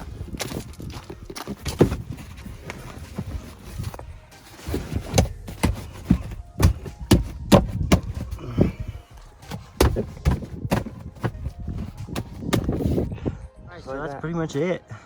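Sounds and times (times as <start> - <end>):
sharp knocks and thuds: 5.0 - 8.8, 9.4 - 13.1.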